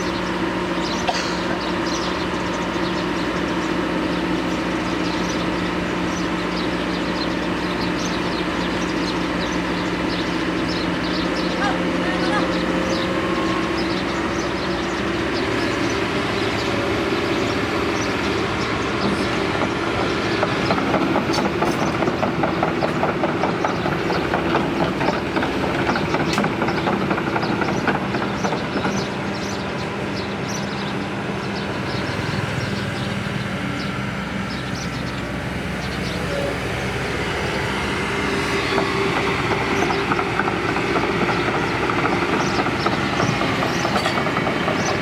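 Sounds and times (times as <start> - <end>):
diesel excavator running: 0.0 - 45.0
fast metallic clatter: 38.6 - 45.0.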